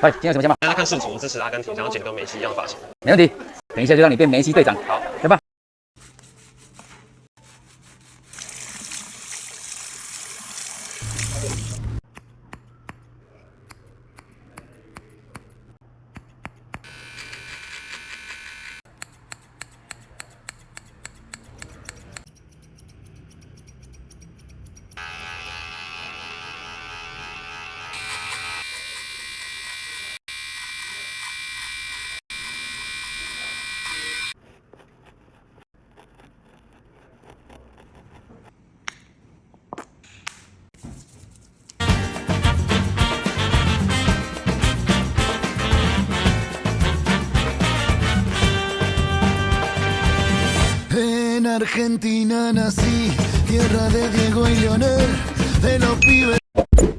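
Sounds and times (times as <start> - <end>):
scissors snipping: 12.1 - 25.0
electric hair clippers buzzing: 16.5 - 21.4, 25.0 - 34.3.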